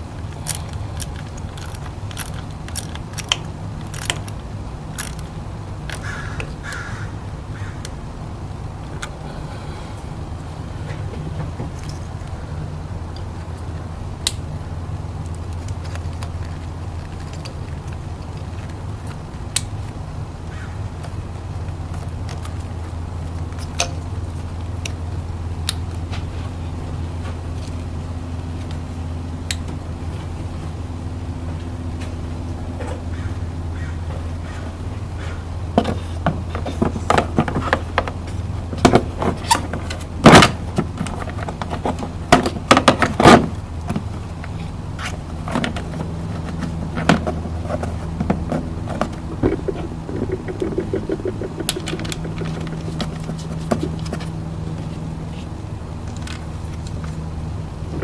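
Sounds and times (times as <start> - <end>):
car engine idling: 0.0 - 58.0
sharp clicks and knocks: 35.7 - 54.4.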